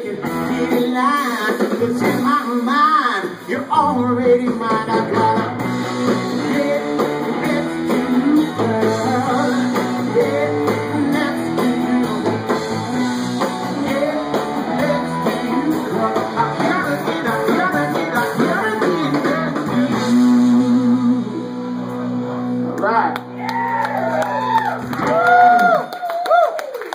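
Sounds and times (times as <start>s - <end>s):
live rock band playing: 0.0s - 25.5s
lead guitar: 0.0s - 25.8s.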